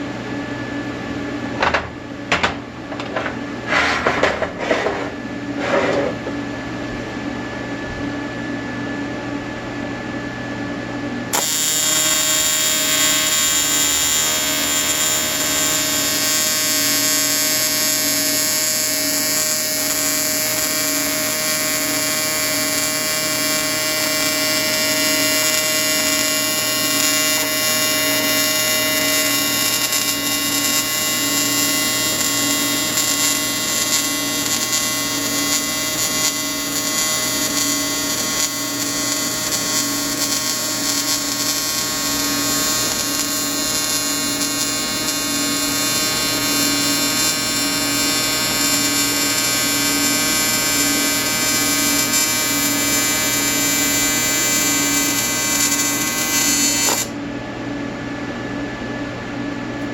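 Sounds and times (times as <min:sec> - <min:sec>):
welding arc buzzing: 0:11.3 - 0:57.2.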